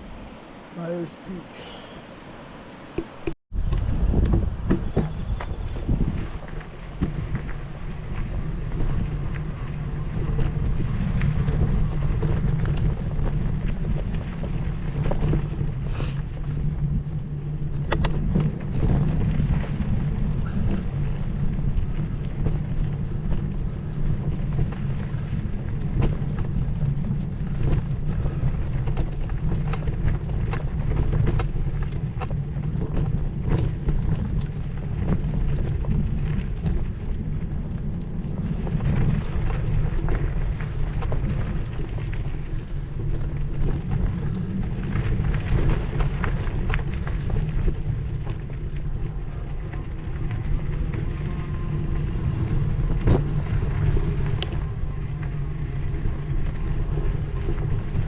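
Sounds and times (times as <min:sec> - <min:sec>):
wind buffeting microphone: 0:00.0 - 0:58.0.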